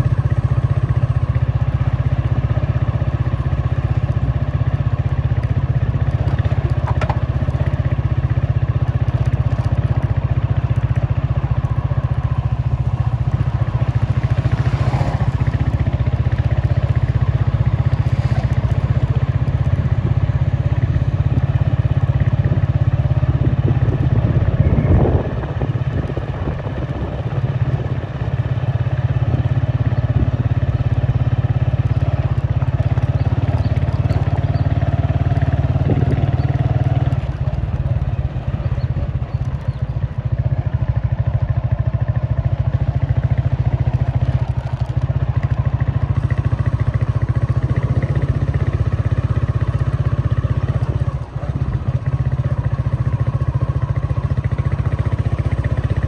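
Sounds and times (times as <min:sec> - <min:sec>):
road noise: 0:00.0 - 0:56.0
vehicle engine rumble: 0:00.0 - 0:56.0
clatter: 0:05.0 - 0:20.8, 0:30.2 - 0:56.0.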